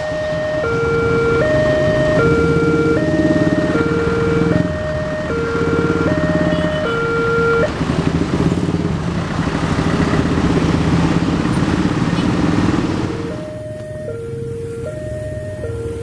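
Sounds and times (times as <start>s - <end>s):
two-tone crossing alarm: 0.0s - 7.8s, 12.9s - 16.0s.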